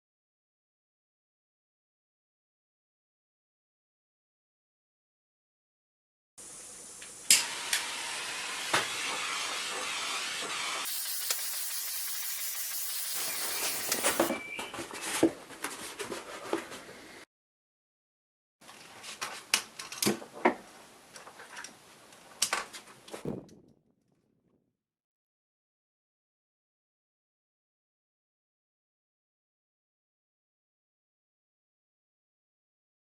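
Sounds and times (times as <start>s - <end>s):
hissing spray: 6.4s - 14.3s.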